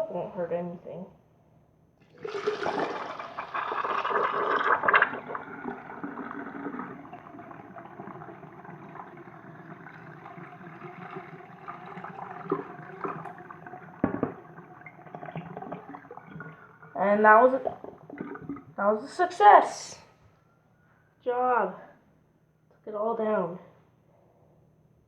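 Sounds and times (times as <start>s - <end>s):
toilet flushing: 2.0s - 18.8s
water gurgling and trickling: 2.1s - 19.1s.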